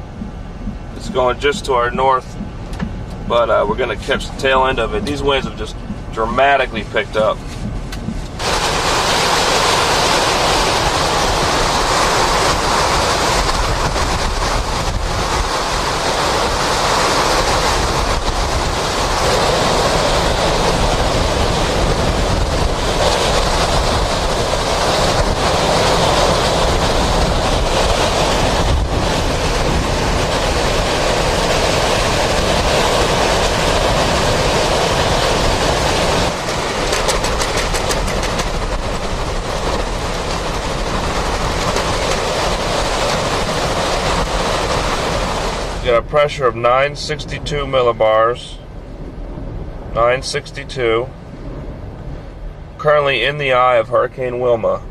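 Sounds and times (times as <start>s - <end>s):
wind buffeting microphone: 0.0s - 46.2s, 46.8s - 50.0s
loud hurricane wind: 0.0s - 54.9s.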